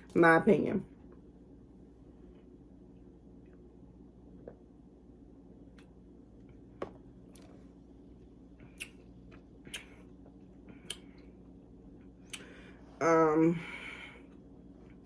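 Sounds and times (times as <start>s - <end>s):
person sipping and swallowing: 4.4s - 4.7s
mouth clicks and smacks: 8.6s - 11.1s.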